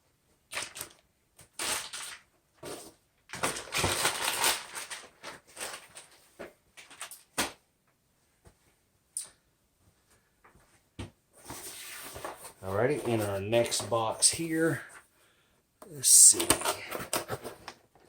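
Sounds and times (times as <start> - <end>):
packaging crinkling: 0.5 - 2.2, 3.3 - 7.4.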